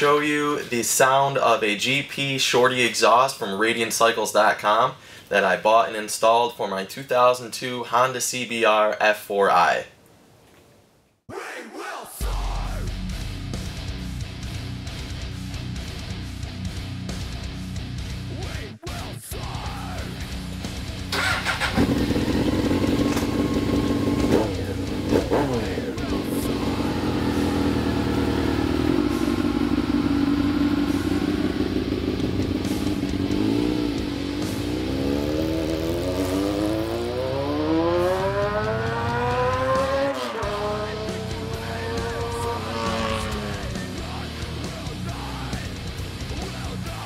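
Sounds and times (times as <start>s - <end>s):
motorcycle engine revving: 21.0s - 46.5s.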